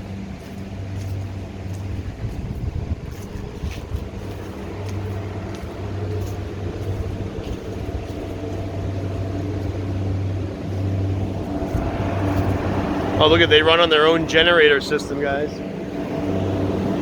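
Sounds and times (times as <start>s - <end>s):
generator engine humming: 0.0s - 17.0s
level tones: 9.0s - 17.0s.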